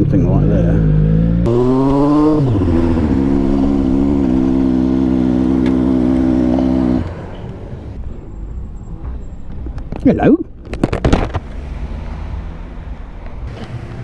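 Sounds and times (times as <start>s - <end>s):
motorcycle engine revving: 0.0s - 8.1s, 11.5s - 14.0s.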